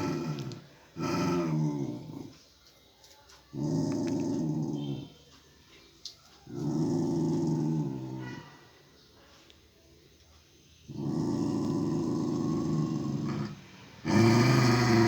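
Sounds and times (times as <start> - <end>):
dog growling: 0.0 - 2.3, 3.5 - 5.2, 6.5 - 8.5, 10.9 - 15.0.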